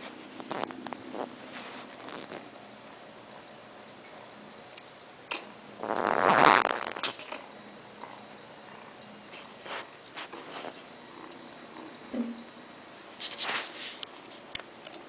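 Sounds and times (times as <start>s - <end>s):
kitten purring: 0.0s - 2.6s, 5.8s - 9.9s, 10.5s - 12.5s.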